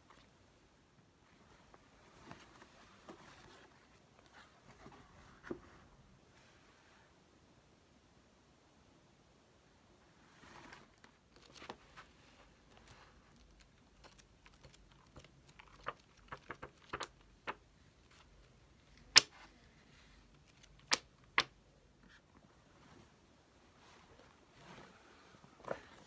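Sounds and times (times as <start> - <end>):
small objects clicking on a desk: 20.6 - 21.5.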